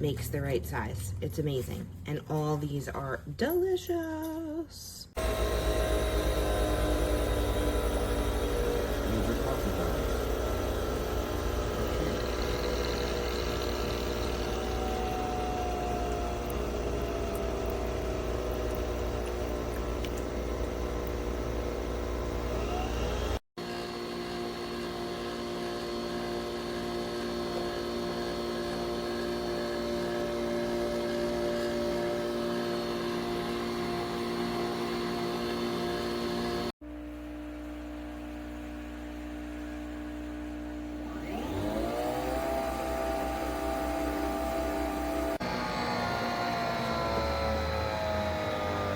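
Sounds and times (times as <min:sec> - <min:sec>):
coffee machine motor whirring: 0:05.1 - 0:36.7, 0:39.9 - 0:48.9.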